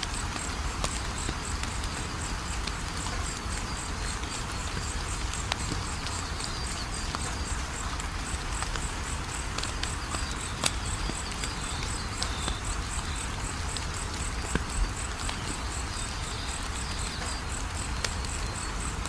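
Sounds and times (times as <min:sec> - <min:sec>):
wood fire crackling and popping: 0:00.0 - 0:19.0.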